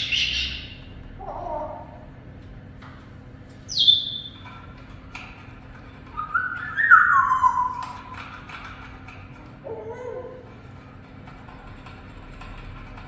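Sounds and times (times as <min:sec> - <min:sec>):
parrot whistling call: 0:03.7 - 0:04.4, 0:06.2 - 0:08.1.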